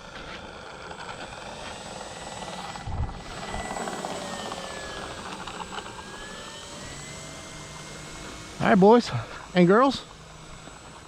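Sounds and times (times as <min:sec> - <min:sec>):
propeller aircraft motor hum: 0:00.0 - 0:11.0.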